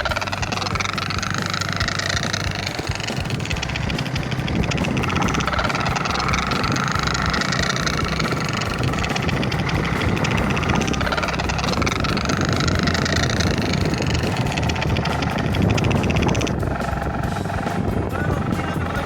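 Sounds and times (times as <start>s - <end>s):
motorcycle engine rumble: 0.0s - 19.0s.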